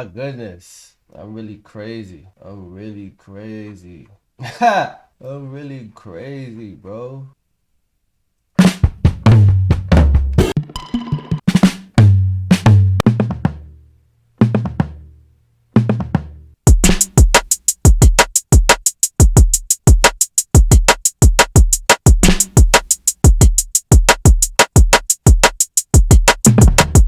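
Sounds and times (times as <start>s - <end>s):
hip-hop drum machine beat: 8.6s - 13.4s, 16.7s - 27.0s.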